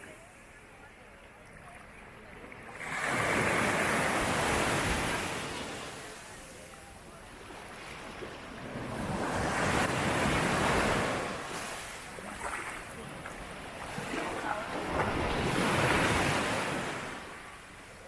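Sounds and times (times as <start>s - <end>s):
sea waves on beach: 0.0s - 18.0s.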